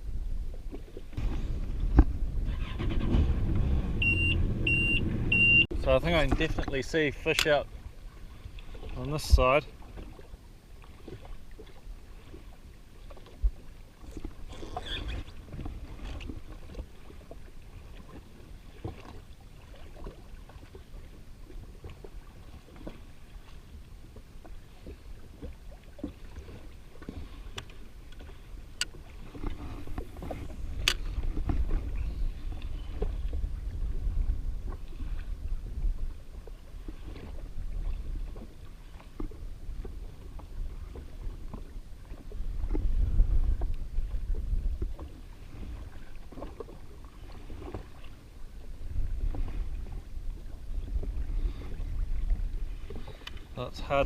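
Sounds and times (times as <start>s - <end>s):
water lapping against jet ski: 0.0s - 54.0s
wind rumbling on microphone: 0.0s - 54.0s.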